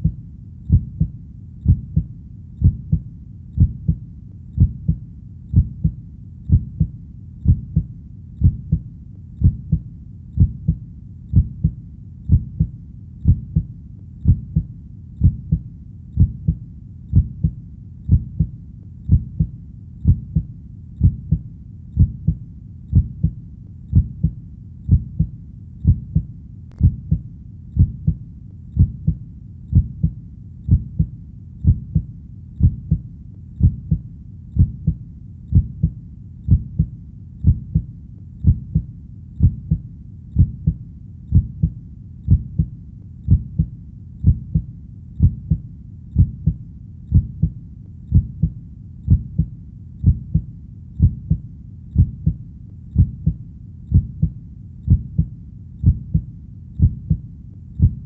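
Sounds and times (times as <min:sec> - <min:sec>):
heartbeat thumps: 0:00.0 - 0:04.0, 0:04.6 - 0:58.0.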